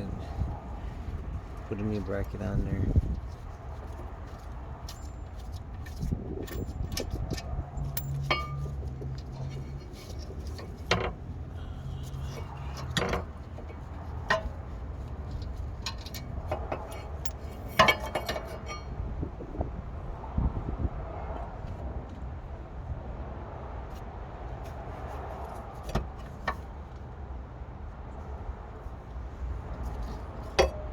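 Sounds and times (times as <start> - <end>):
steady low rumble: 0.0 - 23.5
metallic clinks of tools handled: 7.9 - 8.8, 16.8 - 18.8.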